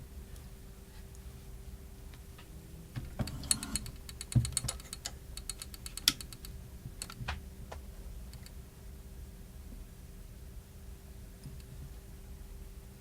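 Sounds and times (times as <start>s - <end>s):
faint steady hum: 0.0s - 13.0s
clicks and taps of repair tools: 3.2s - 7.4s.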